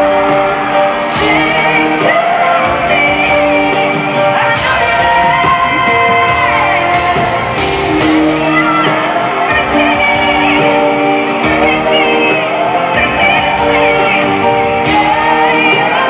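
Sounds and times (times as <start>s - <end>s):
live band accompaniment: 0.0s - 16.0s
woman singing: 0.0s - 16.0s.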